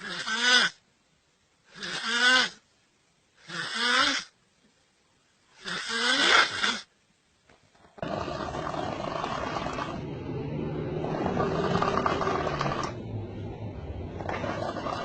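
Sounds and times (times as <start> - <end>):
person snoring loudly: 8.0 - 13.1, 14.2 - 15.0.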